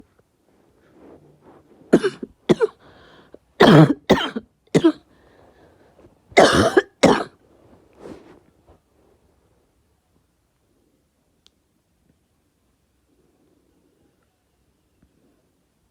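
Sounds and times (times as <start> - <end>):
person coughing: 1.9 - 2.8, 3.6 - 5.0, 6.4 - 7.4.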